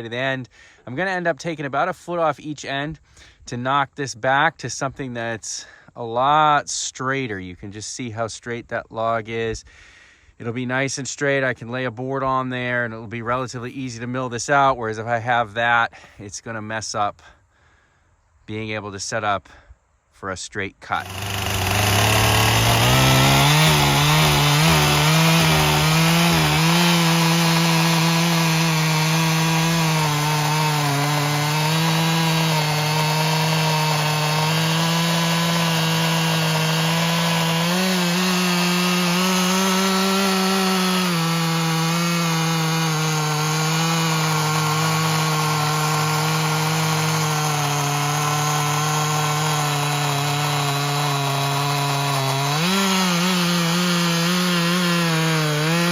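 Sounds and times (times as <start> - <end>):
chainsaw cutting a log: 20.9 - 55.9.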